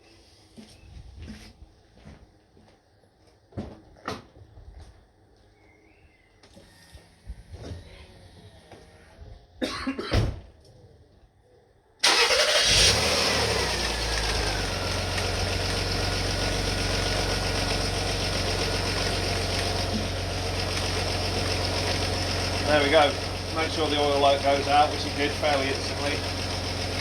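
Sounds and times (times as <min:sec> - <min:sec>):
car engine starting and idling: 0:12.0 - 0:27.0.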